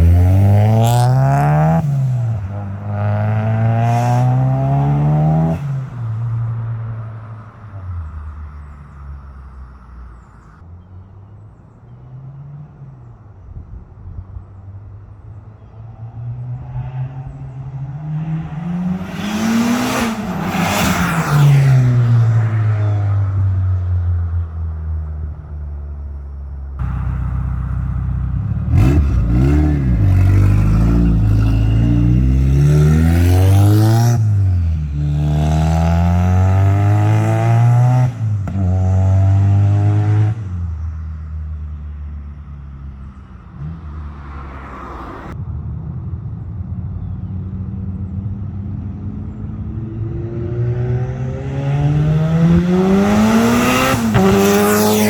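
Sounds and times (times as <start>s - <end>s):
car engine accelerating hard: 16.7s - 23.2s, 26.8s - 40.5s, 48.3s - 55.0s.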